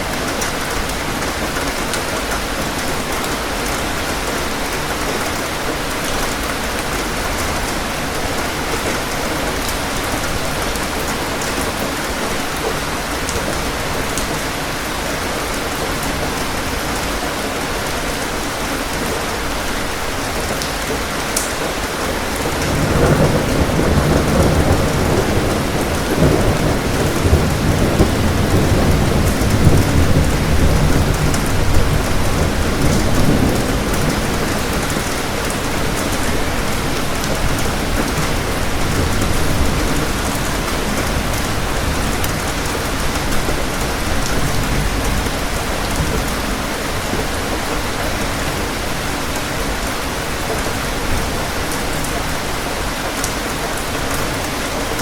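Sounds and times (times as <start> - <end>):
steady rain: 0.0 - 55.0
rolling thunder rumble: 22.3 - 47.4.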